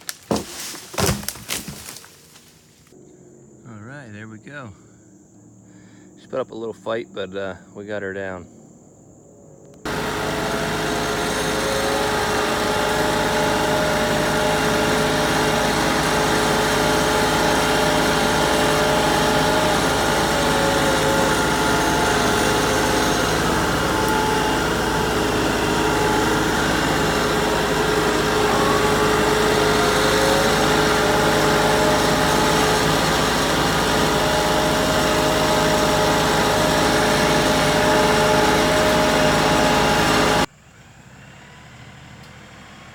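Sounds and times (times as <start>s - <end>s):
tractor diesel engine running: 9.8s - 40.5s.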